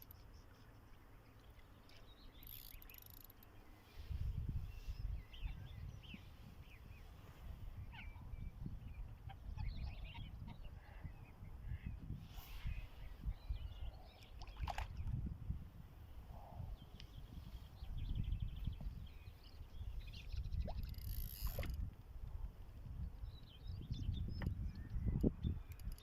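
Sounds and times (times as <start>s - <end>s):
small birds chirping: 0.0s - 7.2s, 7.8s - 15.2s, 16.5s - 21.6s.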